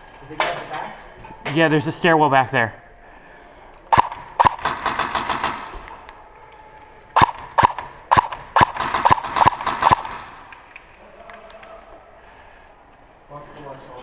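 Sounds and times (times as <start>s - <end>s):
airsoft gun shots echoing: 3.9s - 6.0s, 7.2s - 10.5s.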